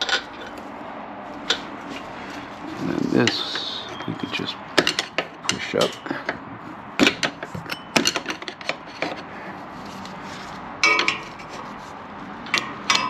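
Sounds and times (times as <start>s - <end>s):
metal clank: 7.0s - 8.5s, 10.8s - 11.4s
metallic clicks and knocks: 7.0s - 9.2s, 10.8s - 11.3s, 12.4s - 13.0s.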